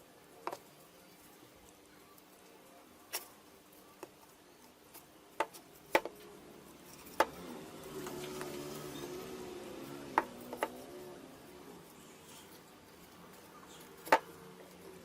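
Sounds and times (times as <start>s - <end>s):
wooden pieces knocking and clicking: 10.2s - 10.8s, 13.8s - 14.3s.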